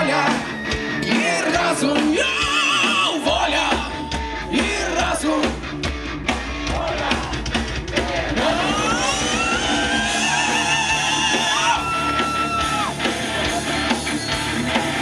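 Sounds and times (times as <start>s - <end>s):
heavy rock band playing live: 0.0s - 15.0s.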